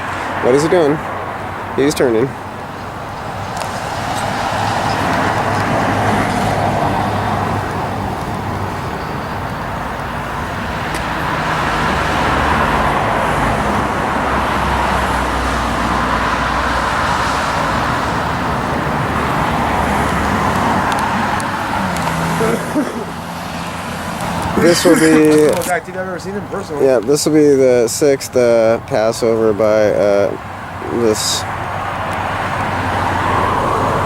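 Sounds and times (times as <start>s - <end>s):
small plane engine droning: 2.4s - 25.2s, 31.6s - 34.0s.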